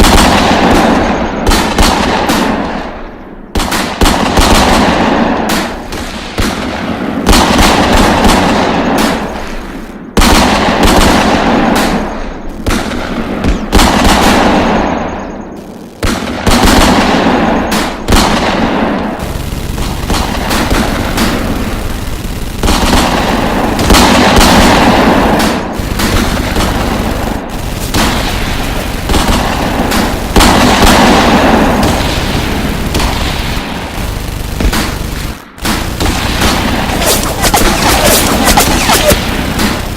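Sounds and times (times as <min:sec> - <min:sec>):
machine-gun fire: 0:00.0 - 0:03.0, 0:03.6 - 0:39.9
single gunshots: 0:00.0 - 0:03.0, 0:16.0 - 0:39.9.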